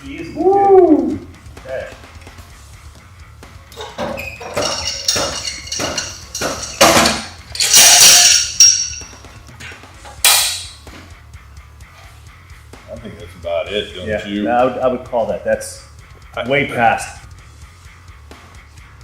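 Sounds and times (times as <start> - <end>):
metallic clanks and knocks: 3.7 - 9.3.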